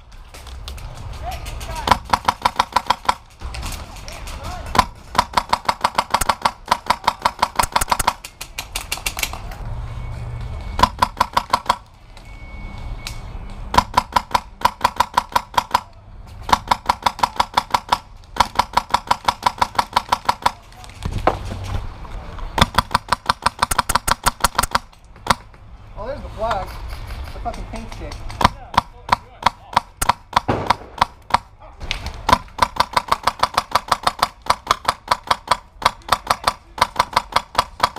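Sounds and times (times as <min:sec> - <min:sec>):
airsoft rifle firing rapid shots: 0:01.8 - 0:03.2, 0:04.8 - 0:08.3, 0:10.8 - 0:11.8, 0:13.7 - 0:15.9, 0:16.5 - 0:20.6, 0:22.6 - 0:25.4, 0:28.4 - 0:31.5, 0:32.2 - 0:37.9.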